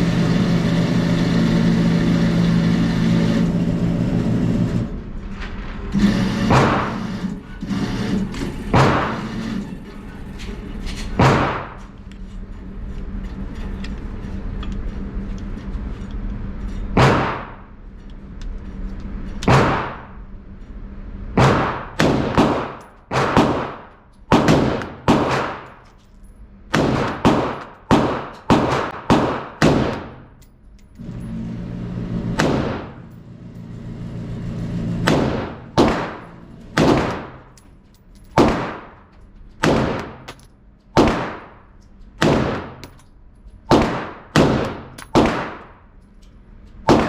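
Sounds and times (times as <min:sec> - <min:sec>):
rifle shots with echo: 0:11.2 - 0:11.8, 0:17.0 - 0:17.6, 0:19.5 - 0:20.1, 0:21.4 - 0:25.7, 0:26.7 - 0:30.2, 0:32.4 - 0:33.1, 0:35.0 - 0:37.5, 0:38.4 - 0:39.0, 0:39.6 - 0:40.3, 0:41.0 - 0:42.9, 0:43.7 - 0:45.8.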